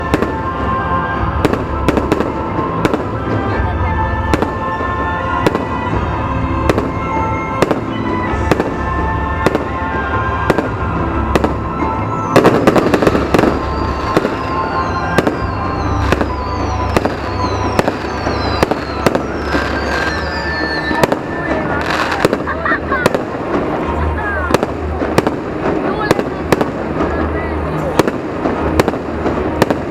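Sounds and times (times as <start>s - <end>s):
crackling firework bursts: 0.0s - 3.4s, 6.6s - 29.9s
fireworks bangs: 0.0s - 29.9s
music: 0.0s - 29.9s
falling firework whistles: 11.4s - 23.3s.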